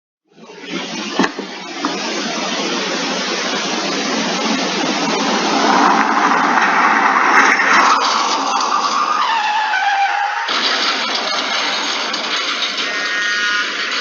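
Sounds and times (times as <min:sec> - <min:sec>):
car driving fast: 0:00.4 - 0:14.0.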